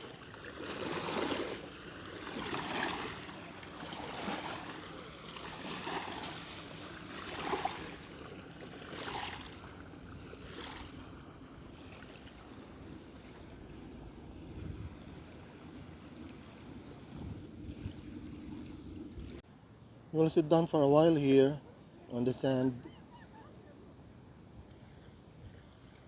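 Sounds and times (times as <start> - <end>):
small waves lapping on shore: 0.0 - 19.4.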